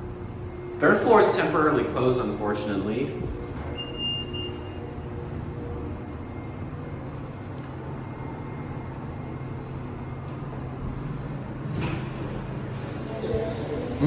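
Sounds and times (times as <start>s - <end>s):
indoor crowd hum: 11.0s - 14.0s.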